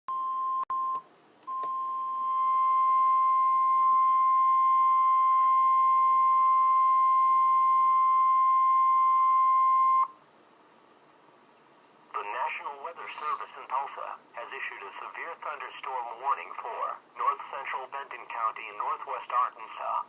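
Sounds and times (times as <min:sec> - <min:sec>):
steady high electronic beep: 0:00.1 - 0:10.1.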